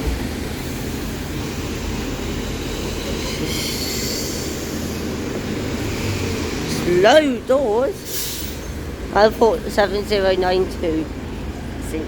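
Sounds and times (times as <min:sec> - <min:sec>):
heavy vehicle low rumble: 0:00.0 - 0:12.0.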